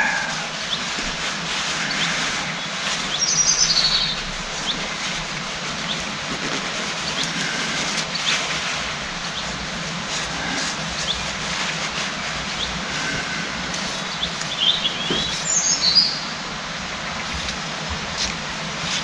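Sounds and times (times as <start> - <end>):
short warbling bird call: 0.0 - 1.0
small birds chirping: 0.0 - 11.3, 12.5 - 16.4
steady rushing noise: 0.0 - 19.0.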